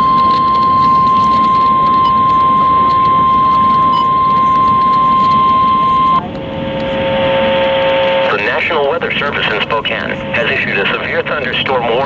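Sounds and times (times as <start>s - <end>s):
loud high alarm tone: 0.0s - 12.0s
radio hiss: 3.8s - 12.0s.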